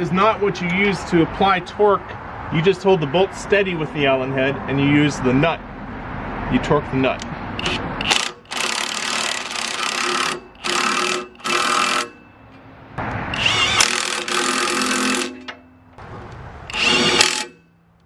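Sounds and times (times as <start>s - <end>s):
cordless impact driver bursts: 7.6s - 12.2s, 13.3s - 15.4s, 16.7s - 17.6s.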